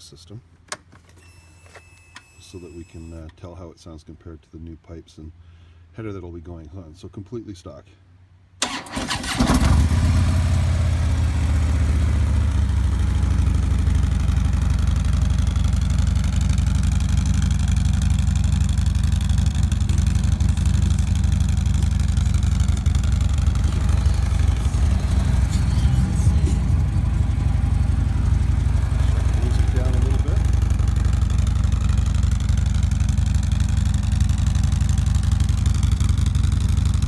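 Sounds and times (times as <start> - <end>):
starter cranking: 8.6 - 9.9, 13.1 - 36.0
motorcycle engine idling: 8.6 - 37.0.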